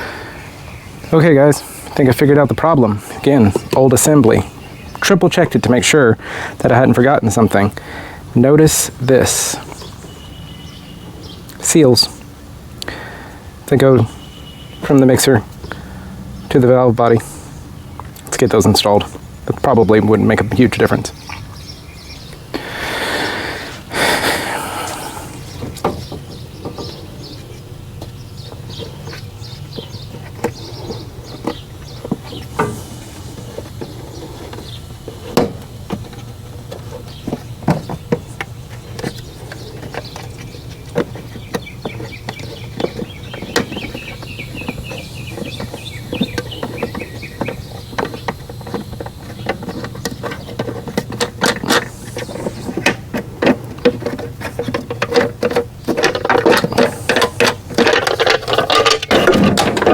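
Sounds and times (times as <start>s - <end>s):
steady low hum: 0.0s - 59.9s
hand tools clanking on metal: 28.5s - 59.9s.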